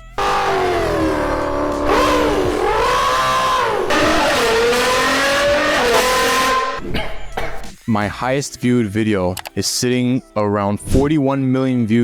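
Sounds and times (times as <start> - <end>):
man imitating car engine revving: 0.0 - 6.8.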